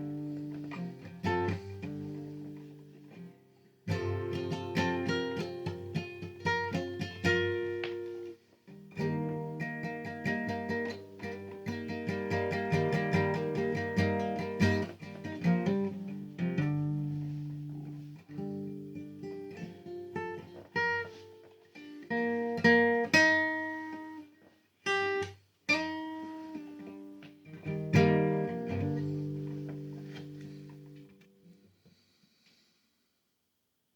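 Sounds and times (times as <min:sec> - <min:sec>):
acoustic guitar chords: 0:00.0 - 0:24.2, 0:24.8 - 0:31.6.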